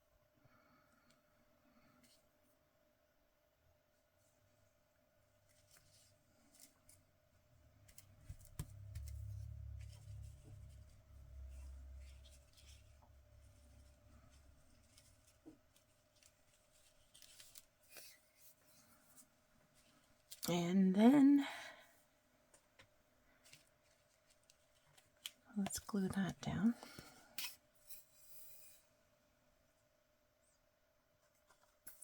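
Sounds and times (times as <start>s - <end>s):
low dull rumble: 8.1s - 14.8s
paper rustling: 11.8s - 18.7s.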